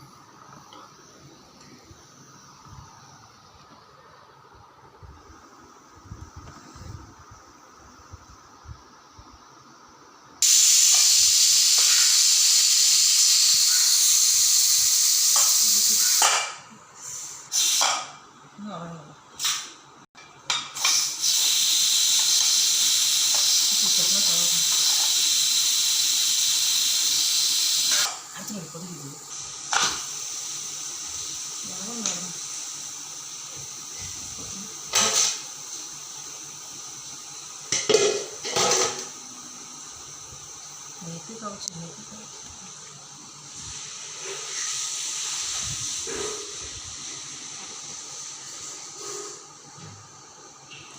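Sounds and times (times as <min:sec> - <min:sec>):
steady background hiss: 0:00.0 - 0:50.9
pressure cooker whistling: 0:10.4 - 0:16.6, 0:17.4 - 0:18.1, 0:20.8 - 0:28.2, 0:29.4 - 0:39.0
metal utensils and pots clattering: 0:37.8 - 0:39.1.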